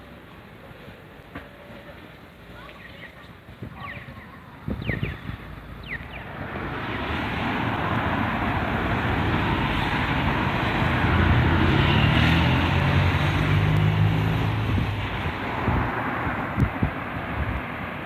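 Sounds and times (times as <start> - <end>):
low engine hum: 4.2 - 18.0
vehicle passing close by: 5.6 - 18.0.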